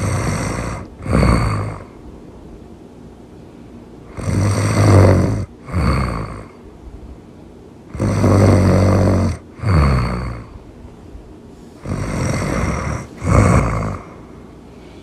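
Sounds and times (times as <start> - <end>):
loud snoring: 0.0 - 2.0, 4.1 - 6.6, 7.9 - 10.6, 11.8 - 14.3.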